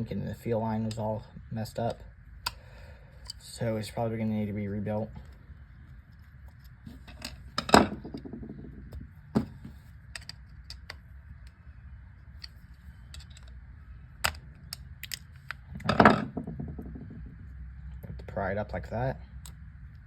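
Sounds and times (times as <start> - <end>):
small metal clicks and clinks: 12.4 - 13.6.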